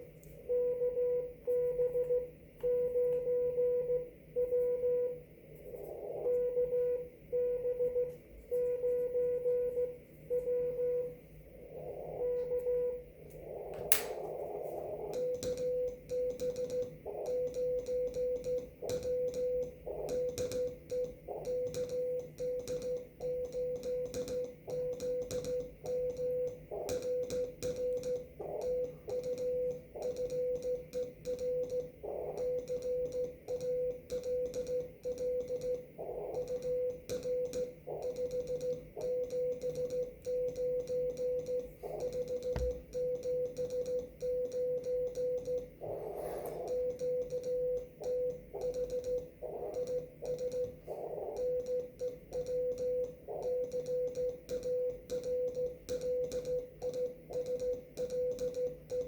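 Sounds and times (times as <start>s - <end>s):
morse code tone: 0.5s - 5.2s, 6.1s - 11.2s.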